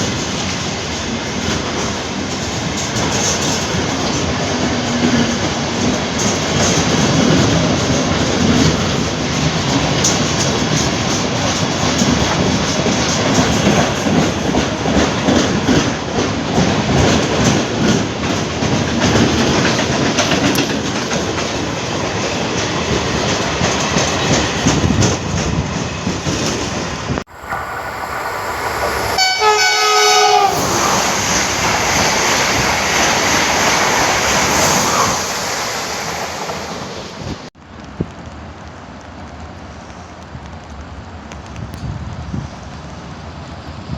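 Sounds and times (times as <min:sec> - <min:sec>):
train wheels clattering: 0:00.0 - 0:27.0
train horn: 0:29.2 - 0:31.2.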